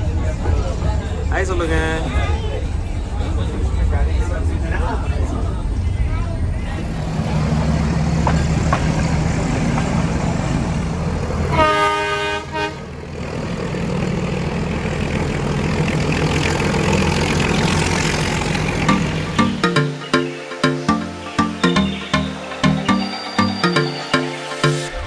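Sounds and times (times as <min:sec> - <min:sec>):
train rumbling: 0:00.0 - 0:20.3
train horn blast: 0:11.5 - 0:13.0.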